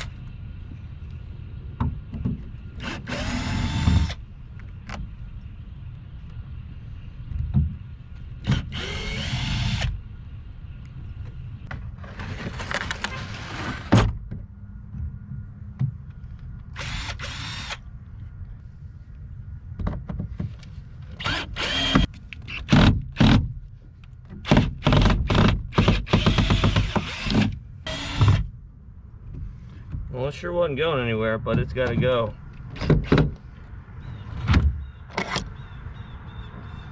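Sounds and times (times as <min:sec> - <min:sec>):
low rumble: 0:00.0 - 0:22.0
power drill bursts: 0:21.2 - 0:22.1.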